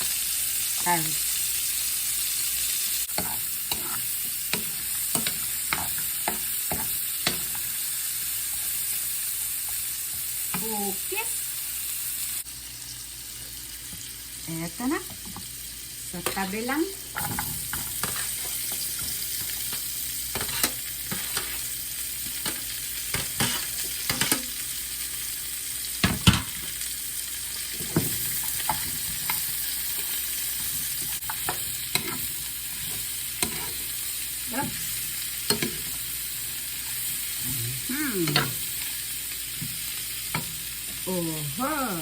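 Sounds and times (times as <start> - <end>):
vegetables sizzling in oil: 0.0 - 42.0
spatula scraping a wok: 3.0 - 10.7, 17.2 - 24.6, 27.8 - 37.4.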